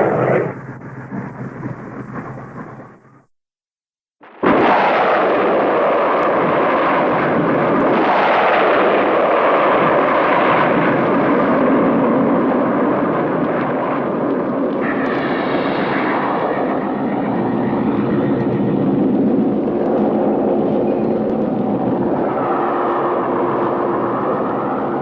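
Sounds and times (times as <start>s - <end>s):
cartoon rocket thruster rush: 0.0s - 2.4s, 4.2s - 25.0s
high fluttering noise: 0.0s - 3.2s, 14.8s - 25.0s.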